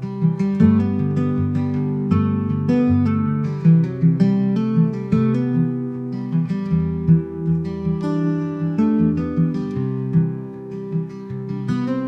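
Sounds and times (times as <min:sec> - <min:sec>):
acoustic guitar playing: 0:00.0 - 0:12.0.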